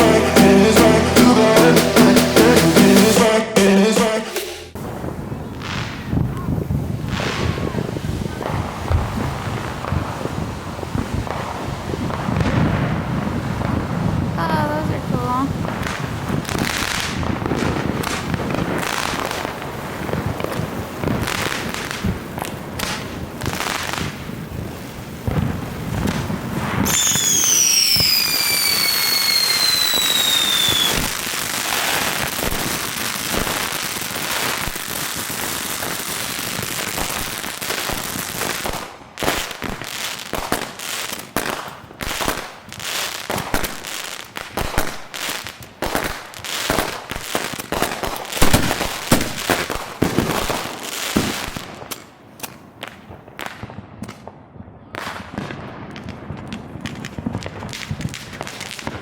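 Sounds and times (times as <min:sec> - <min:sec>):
firework bangs: 0:00.0 - 0:59.0
fireworks crackling: 0:00.0 - 0:59.0
firework whistle: 0:26.6 - 0:34.8.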